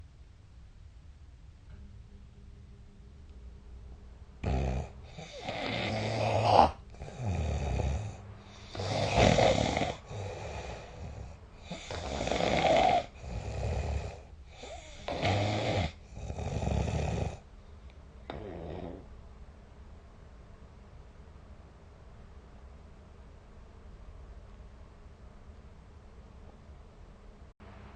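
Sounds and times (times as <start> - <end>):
person snoring: 4.4 - 17.4, 18.3 - 19.1.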